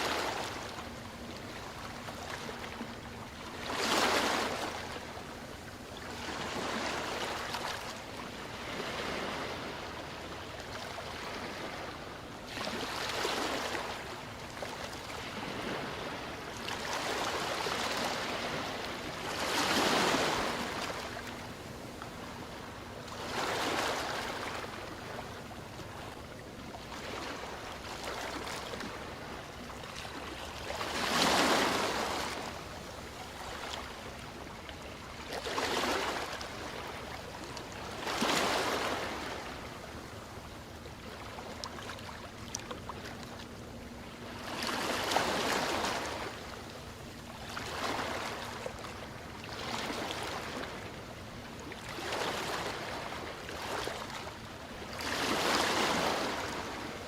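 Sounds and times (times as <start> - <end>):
steady wash of water: 0.0 - 43.3.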